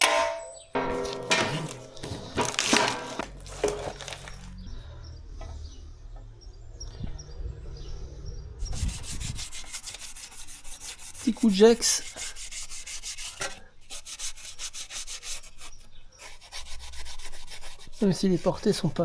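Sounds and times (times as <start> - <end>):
abrasive pad scrubbing metal: 0.0 - 19.0
low steady hum: 0.3 - 11.2.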